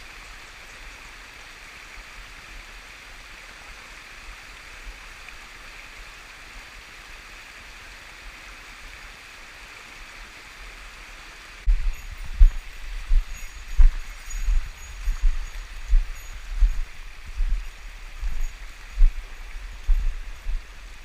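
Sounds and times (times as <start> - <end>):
stream rushing over rocks: 0.0 - 21.0
low thumps and rumbles: 11.7 - 20.7.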